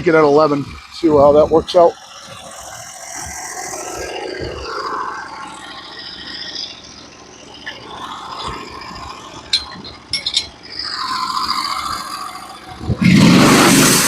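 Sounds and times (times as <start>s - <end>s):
sawmill engine idling: 0.0s - 14.0s
sharp metallic clinks: 8.8s - 11.7s.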